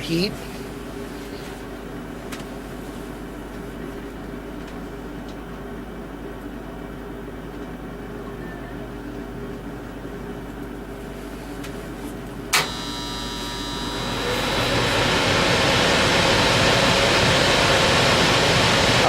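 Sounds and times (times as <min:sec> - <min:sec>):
contactor clicking shut: 0:12.5 - 0:12.9
furnace blower rushing air: 0:13.8 - 0:19.0.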